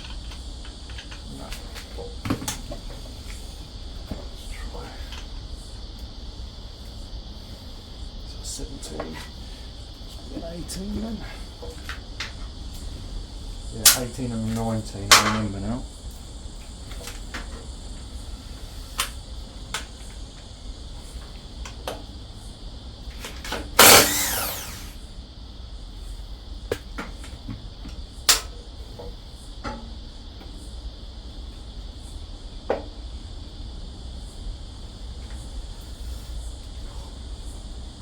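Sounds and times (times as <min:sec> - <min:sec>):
crickets chirring: 0:00.0 - 0:38.0
power tool burst: 0:23.6 - 0:25.1.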